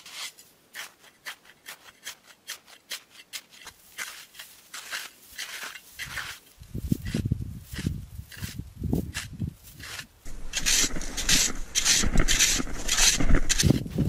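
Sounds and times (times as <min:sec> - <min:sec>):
icy snow crunching: 0:09.6 - 0:14.0.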